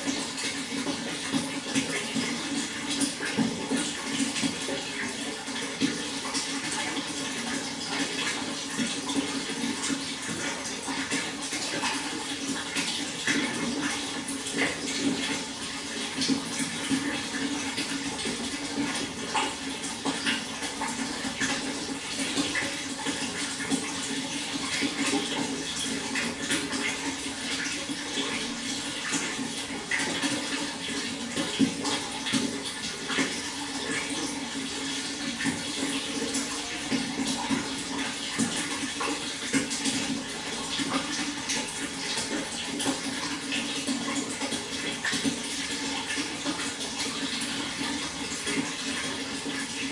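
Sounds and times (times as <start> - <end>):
water flowing and splashing: 0.0 - 49.9.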